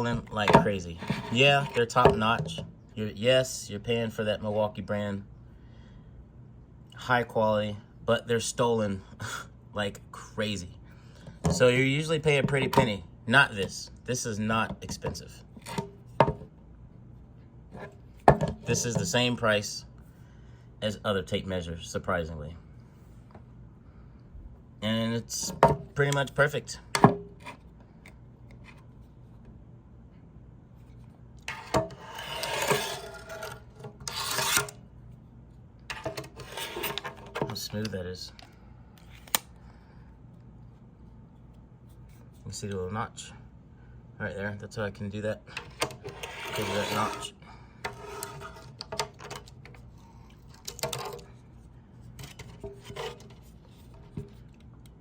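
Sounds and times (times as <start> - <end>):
tape measure blade rasping on case: 31.5 - 34.8, 47.9 - 49.3.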